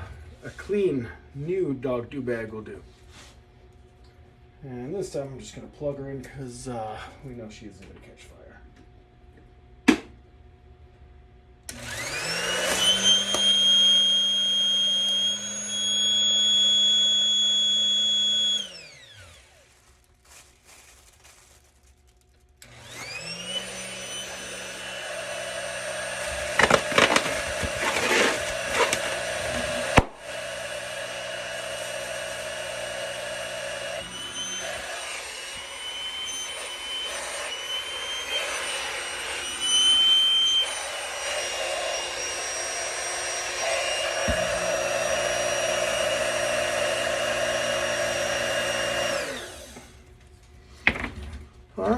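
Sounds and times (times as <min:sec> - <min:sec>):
air inflator motor whining: 0:11.7 - 0:19.8, 0:22.6 - 0:50.1
crackles: 0:19.7 - 0:22.6.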